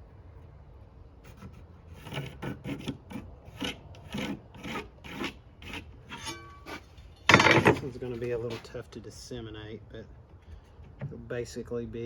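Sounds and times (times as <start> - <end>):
rough rubbing on plywood: 1.3 - 6.8.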